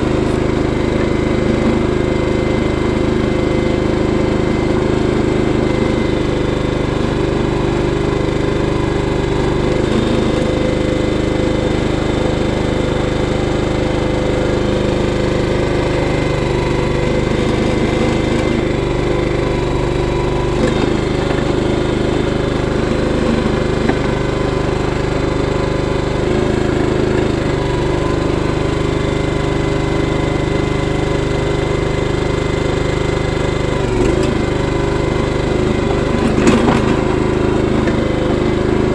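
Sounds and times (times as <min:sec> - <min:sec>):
small engine running: 0:00.0 - 0:38.9.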